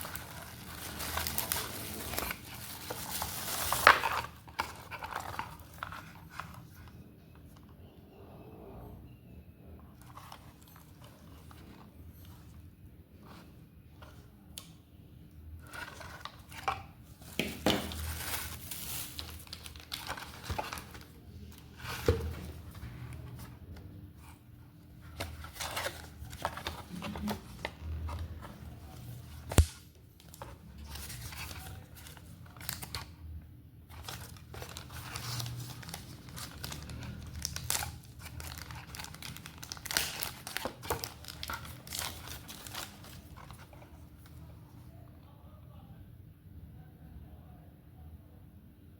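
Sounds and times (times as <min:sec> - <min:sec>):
plastic and paper crinkling: 0:00.0 - 0:07.6, 0:10.0 - 0:14.7, 0:15.6 - 0:33.2, 0:33.8 - 0:44.9
handling rustles: 0:15.6 - 0:33.1, 0:33.9 - 0:44.9.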